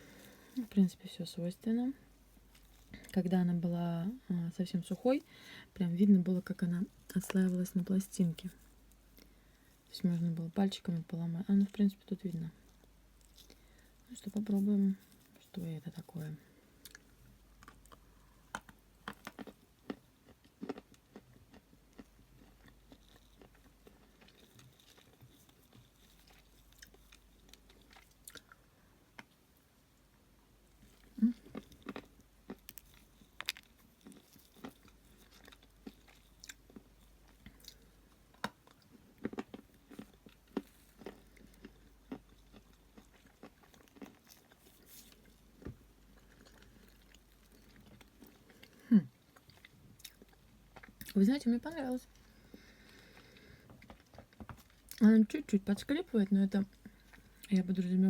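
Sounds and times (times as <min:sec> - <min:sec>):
person biting and chewing clay: 0:16.8 - 0:28.6, 0:30.8 - 0:51.1.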